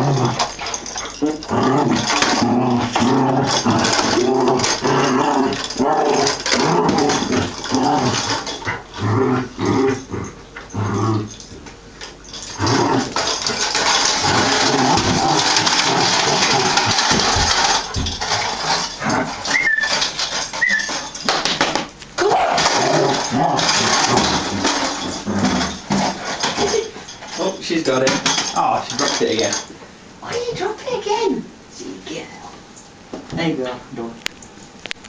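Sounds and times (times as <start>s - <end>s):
dog noises: 0.0s - 21.3s
toy scuffling and knocking: 11.4s - 22.0s, 22.6s - 29.7s.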